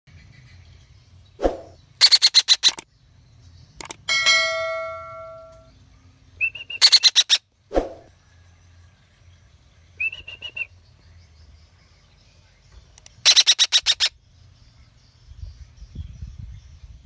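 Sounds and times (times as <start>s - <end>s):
small bell ringing: 4.1s - 5.7s
parakeet harsh rapid calls: 13.3s - 14.1s.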